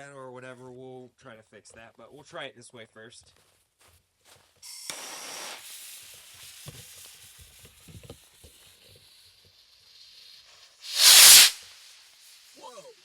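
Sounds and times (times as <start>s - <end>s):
firework fuse sizzling: 4.6s - 13.0s
rocket launch whoosh: 10.8s - 12.7s.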